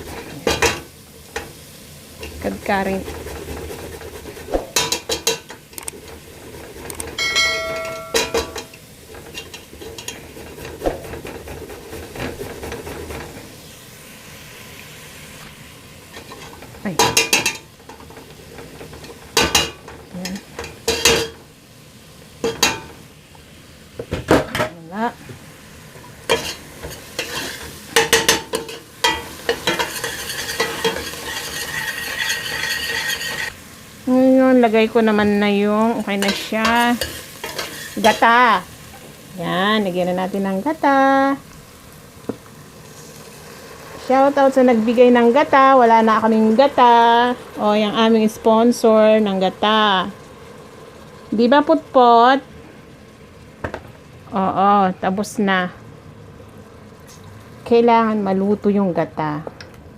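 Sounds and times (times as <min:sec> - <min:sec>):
food sizzling in hot oil: 0:00.0 - 0:59.9
utensil scraping and knocking a pan: 0:02.3 - 0:13.5, 0:26.3 - 0:33.5
metal utensils clinking on pan: 0:04.7 - 0:05.6, 0:07.1 - 0:10.3, 0:16.2 - 0:18.1, 0:18.8 - 0:21.4, 0:22.4 - 0:23.0, 0:26.3 - 0:33.5, 0:36.1 - 0:38.4
ringing metallic clang: 0:07.2 - 0:08.8.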